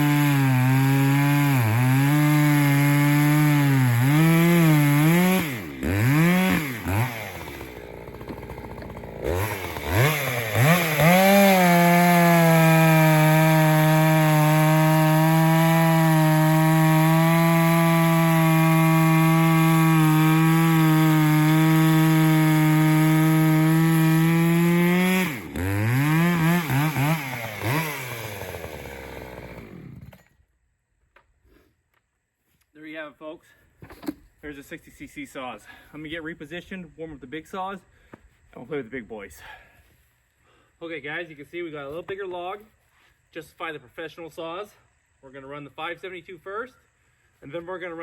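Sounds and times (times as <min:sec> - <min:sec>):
chainsaw cutting log: 0:00.0 - 0:30.4.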